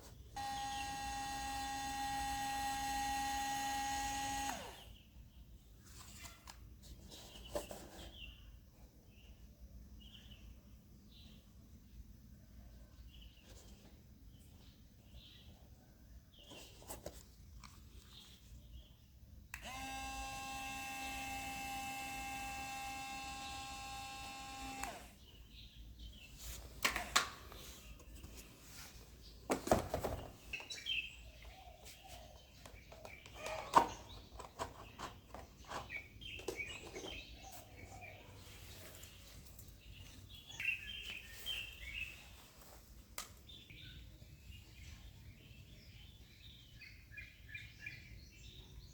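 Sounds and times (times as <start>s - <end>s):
small electric motor humming: 0.4s - 5.0s, 19.6s - 25.3s.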